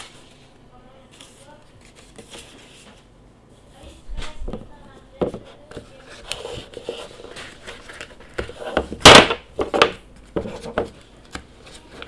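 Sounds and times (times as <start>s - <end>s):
hands handling cardboard packaging: 5.1s - 12.0s.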